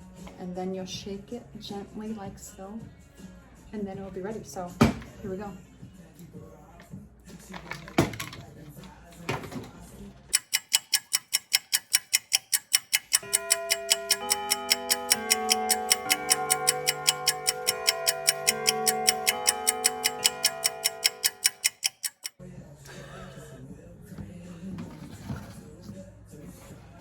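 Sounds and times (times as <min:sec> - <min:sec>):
clock ticking: 0:10.3 - 0:22.4
sustained music notes: 0:13.2 - 0:22.3.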